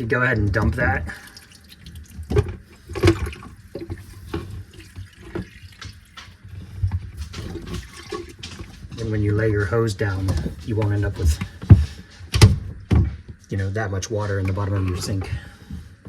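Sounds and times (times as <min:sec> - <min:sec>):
water splashing and trickling: 0:00.0 - 0:15.9
knocks from handling hose: 0:10.2 - 0:13.4.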